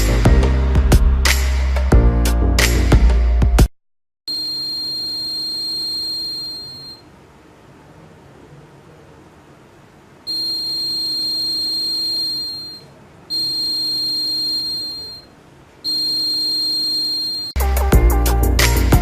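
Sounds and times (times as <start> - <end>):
alarm buzzer beeping: 4.3 - 7.1, 10.3 - 17.6.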